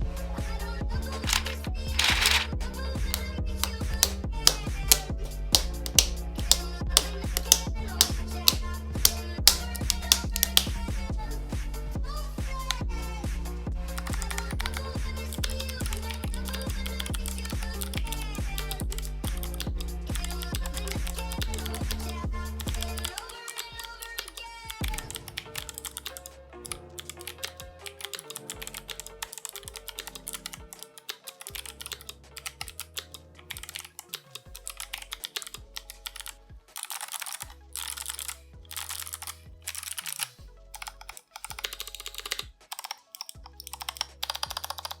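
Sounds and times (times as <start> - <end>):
background music with bass line: 0.0 - 30.6, 37.4 - 42.7
mechanical keyboard typing: 1.2 - 2.5, 3.6 - 10.7, 22.7 - 26.3, 27.0 - 45.0.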